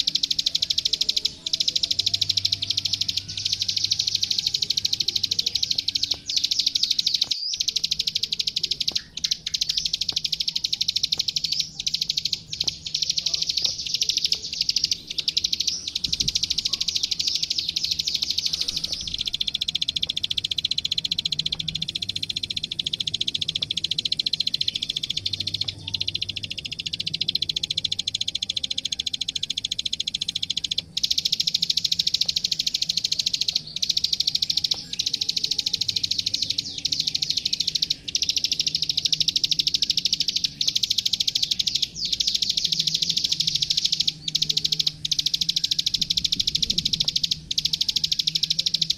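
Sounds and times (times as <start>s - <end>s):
bird clicking trill: 0.0s - 48.9s.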